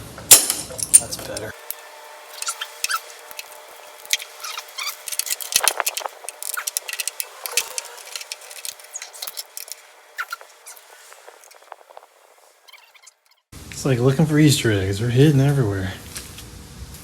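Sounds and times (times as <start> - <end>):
hand tools clicking on sheet metal: 2.4 - 10.5.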